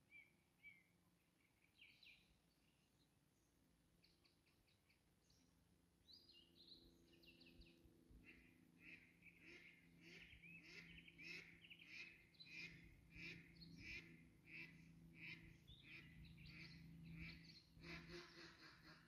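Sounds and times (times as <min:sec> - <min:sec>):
birds chirping: 0:06.1 - 0:19.0.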